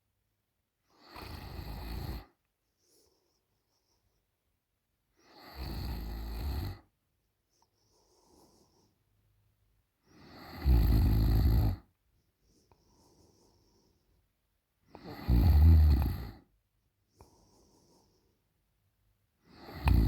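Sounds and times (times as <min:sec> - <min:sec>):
woman snoring loudly: 0:01.0 - 0:02.3, 0:05.3 - 0:06.8, 0:10.2 - 0:11.8, 0:15.0 - 0:16.4, 0:19.5 - 0:20.0.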